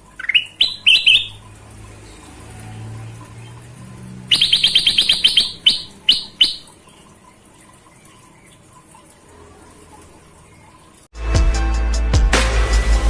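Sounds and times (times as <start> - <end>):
songbird chirping: 0.0 - 2.5, 4.3 - 11.0.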